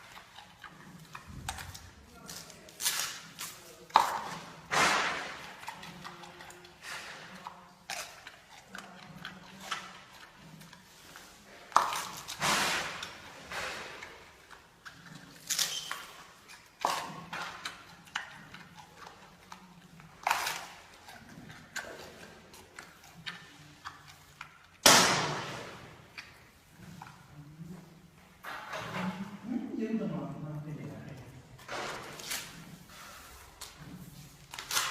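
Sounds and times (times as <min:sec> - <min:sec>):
panda chewing crunches: 0:00.0 - 0:27.2, 0:31.6 - 0:34.9
bamboo stalks cracking: 0:01.6 - 0:04.1, 0:34.5 - 0:34.9.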